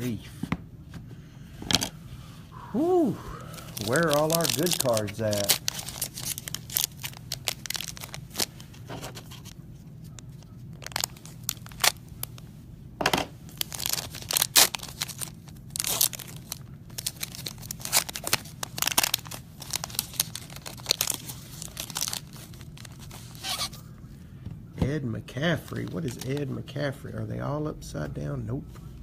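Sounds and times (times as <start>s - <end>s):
wrapper tearing and crinkling: 3.5s - 12.4s, 13.5s - 23.8s, 25.7s - 26.5s.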